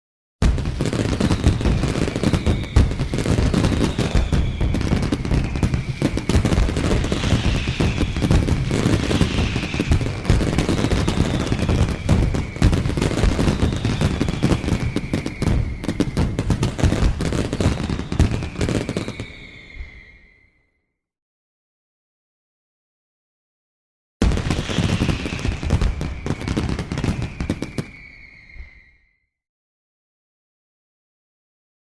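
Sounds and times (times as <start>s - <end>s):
fireworks bangs and crackles: 0.4s - 20.4s, 24.2s - 28.9s
falling firework whistles: 0.4s - 21.0s, 24.2s - 29.4s.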